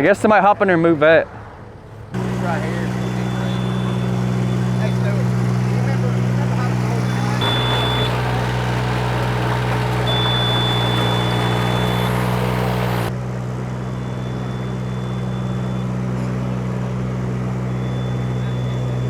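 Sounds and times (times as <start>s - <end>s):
high warning beep: 2.2s - 13.1s, 14.0s - 16.0s, 17.7s - 19.0s
heavy equipment engine running: 2.2s - 19.0s.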